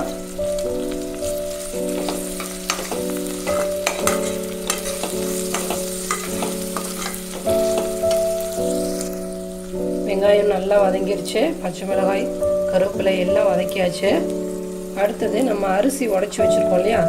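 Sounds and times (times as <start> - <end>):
held musical notes: 0.0 - 17.0
vegetables sizzling in hot oil: 0.0 - 17.0
spatula scraping a pot: 1.9 - 8.3.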